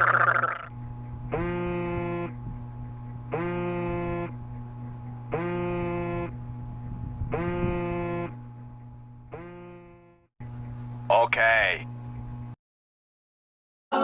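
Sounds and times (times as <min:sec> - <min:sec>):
electronic buzzer beeps: 0:01.3 - 0:02.4, 0:03.3 - 0:04.4, 0:05.3 - 0:06.4, 0:07.3 - 0:08.4, 0:09.3 - 0:10.3.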